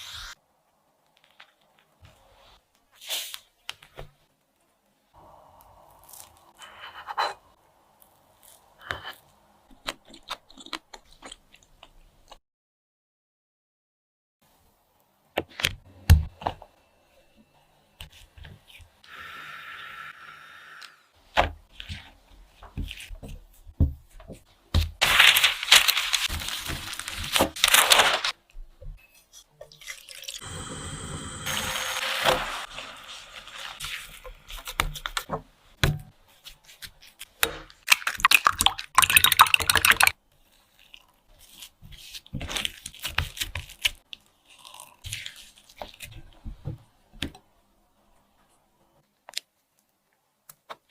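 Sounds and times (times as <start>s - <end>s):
packaging crinkling and tearing: 25.0s - 28.4s, 32.0s - 35.3s, 40.6s - 46.1s.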